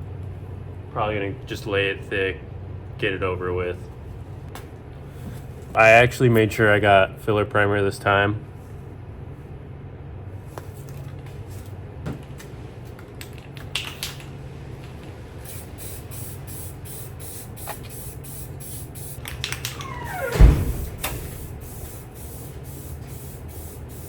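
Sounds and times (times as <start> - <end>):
steady low hum: 0.0 - 24.0
spray hissing: 15.4 - 19.2, 20.1 - 24.0.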